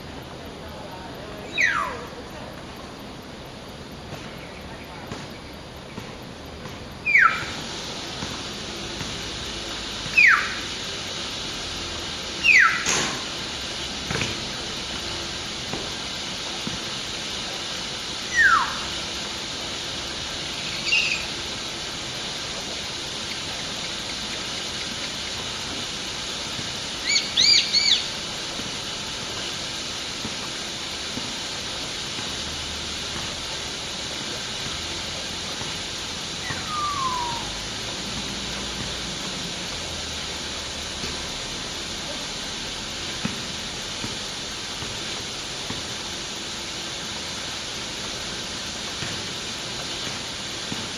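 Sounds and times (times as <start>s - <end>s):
steady hiss: 0.0s - 50.9s
myna bird calls: 20.6s - 21.3s, 27.0s - 28.1s, 36.4s - 37.5s.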